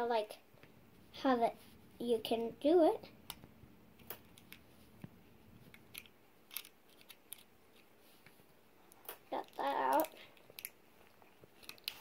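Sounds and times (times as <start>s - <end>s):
toy shell pieces clicking: 5.7s - 7.5s, 9.4s - 10.8s.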